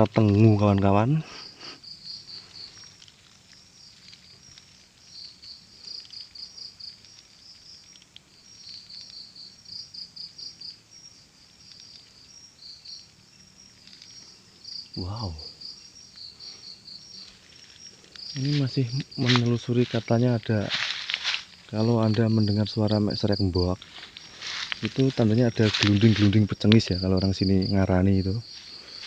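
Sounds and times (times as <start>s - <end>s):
crickets chirping: 0.0s - 29.0s.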